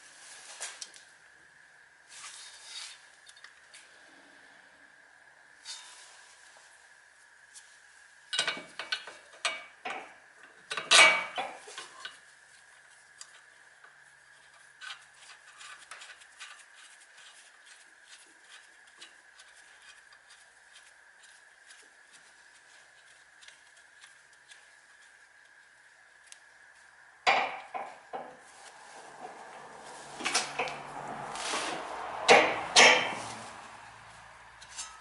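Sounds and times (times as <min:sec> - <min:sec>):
metal tools clanking: 0:32.3 - 0:33.4.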